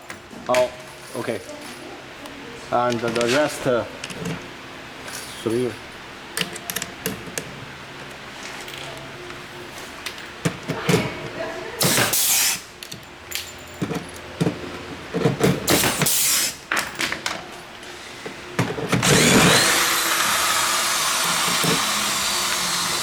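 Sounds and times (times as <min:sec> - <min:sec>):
power tool hissing: 0:11.8 - 0:12.7, 0:15.7 - 0:16.6, 0:19.0 - 0:23.0.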